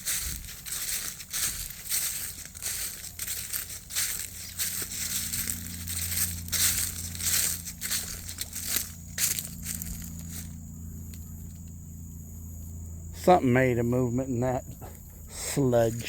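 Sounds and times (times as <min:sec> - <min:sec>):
dry brush and leaves crunching: 0:00.0 - 0:11.7
steady low hum: 0:00.0 - 0:16.0.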